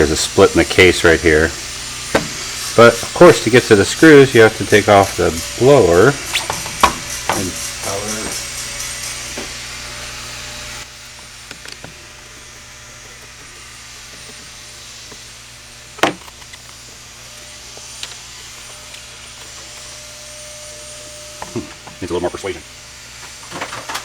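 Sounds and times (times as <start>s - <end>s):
steady low hum: 0.0s - 23.7s
plastic parts clicking and rubbing: 11.0s - 19.9s.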